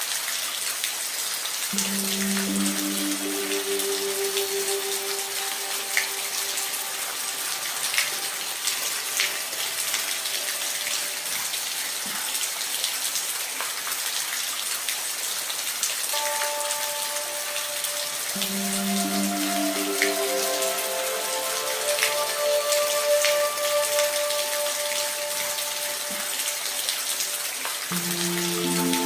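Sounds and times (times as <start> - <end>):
steady rain falling: 0.0 - 29.0
soft held music tones: 1.7 - 12.0, 16.2 - 29.0.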